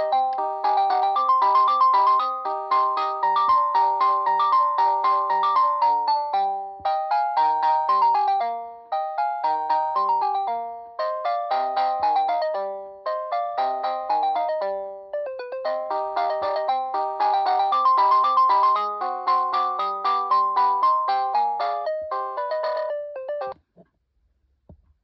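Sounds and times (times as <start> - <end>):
polyphonic ringtone melody: 0.0 - 23.6.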